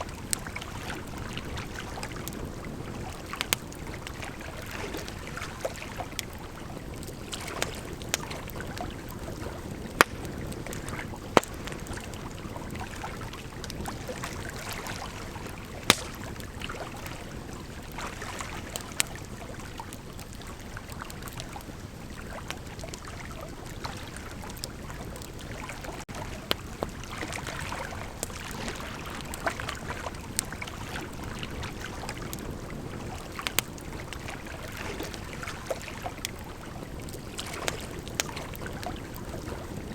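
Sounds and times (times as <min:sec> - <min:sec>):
crackles and pops of wood: 0:00.0 - 0:14.7, 0:15.4 - 0:17.2, 0:23.8 - 0:32.6, 0:33.2 - 0:39.3
bonfire hissing: 0:15.2 - 0:17.9.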